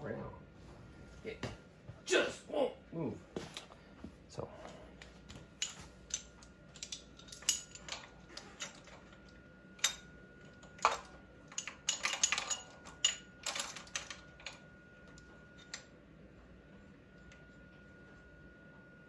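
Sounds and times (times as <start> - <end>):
metal hand tools clinking: 10.8 - 14.1.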